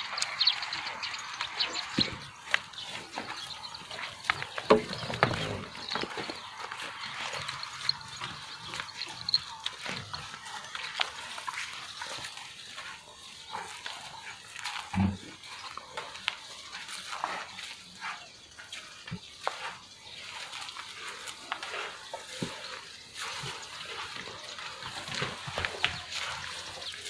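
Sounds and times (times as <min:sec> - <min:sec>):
farm animal calls: 0:00.0 - 0:27.0.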